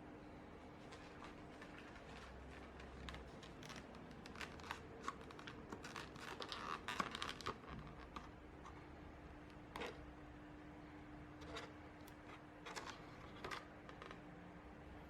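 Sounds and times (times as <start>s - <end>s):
crinkling and rustling: 0.8s - 8.8s, 11.4s - 14.2s.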